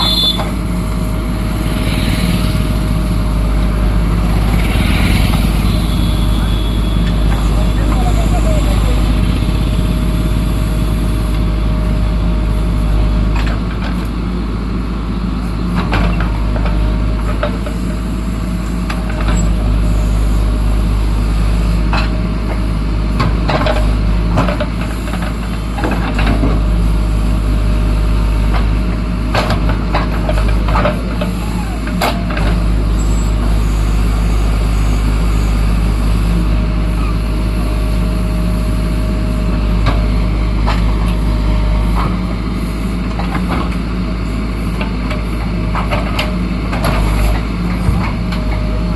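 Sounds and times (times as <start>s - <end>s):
steady whine: 0.0s - 13.5s
diesel engine drone: 0.0s - 48.9s.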